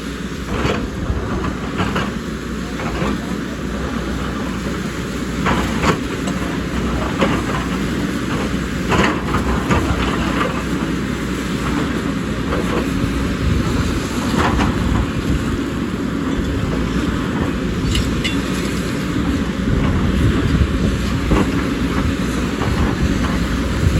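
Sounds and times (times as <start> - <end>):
excavator diesel engine running: 0.0 - 23.9
metallic clanks and knocks: 17.4 - 18.8.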